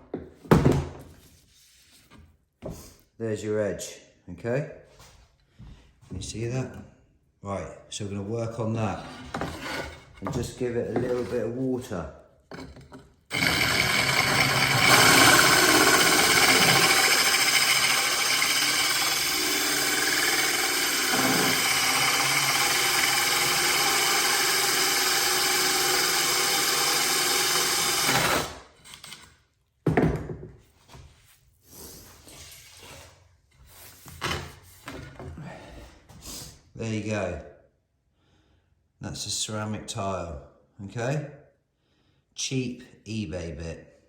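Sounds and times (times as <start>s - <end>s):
electric drill grinding through tile: 13.3s - 29.3s.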